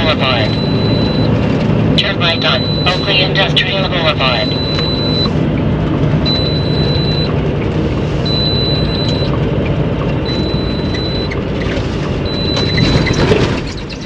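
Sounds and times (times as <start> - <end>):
high-pitched electronic beep: 0.0 - 1.3, 2.0 - 5.3, 6.3 - 7.3, 8.2 - 9.3, 10.2 - 11.4
engine and road noise: 0.0 - 14.0.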